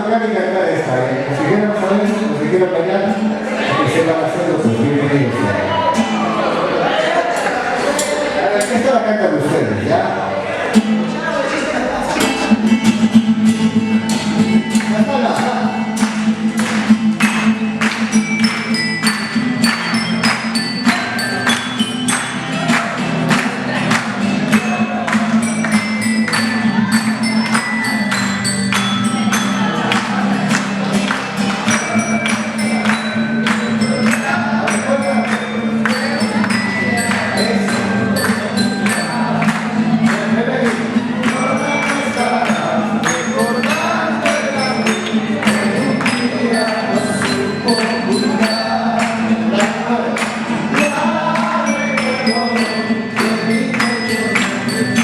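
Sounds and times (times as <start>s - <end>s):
group singing folk song: 10.2s - 55.0s
jingling tambourine rhythm: 12.1s - 55.0s.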